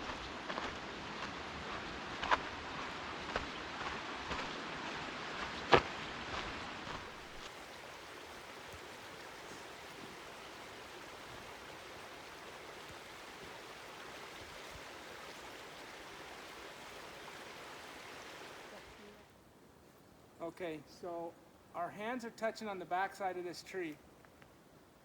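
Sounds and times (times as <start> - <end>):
creek rushing: 0.0 - 19.5.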